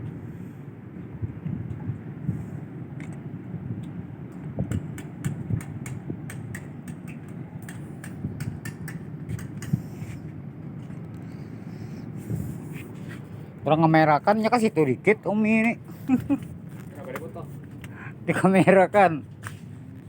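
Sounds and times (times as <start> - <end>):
sharp clicks and taps: 3.8 - 9.8.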